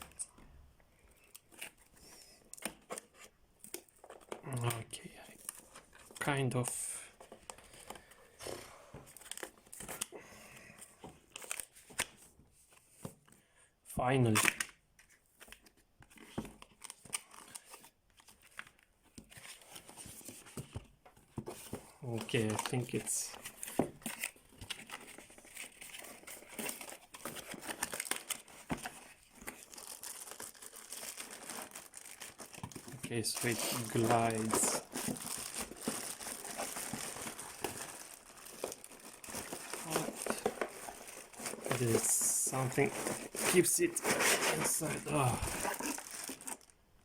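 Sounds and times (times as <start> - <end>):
packaging rustling and crinkling: 5.4 - 10.1, 15.4 - 46.8.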